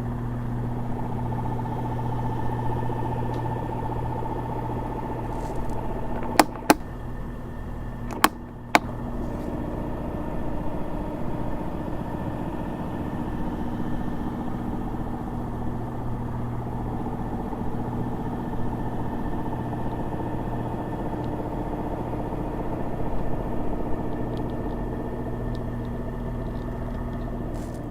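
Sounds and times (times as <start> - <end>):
fan humming: 0.0 - 27.9
sharp clicks: 5.5 - 6.9, 8.1 - 8.9.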